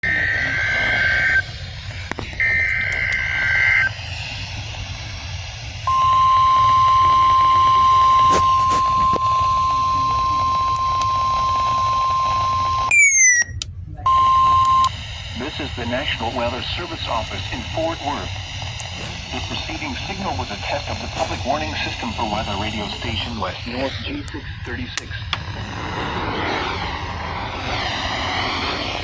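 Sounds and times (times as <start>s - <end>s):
radio hiss: 0.0s - 29.0s
steady warning alarm tone: 5.8s - 29.0s.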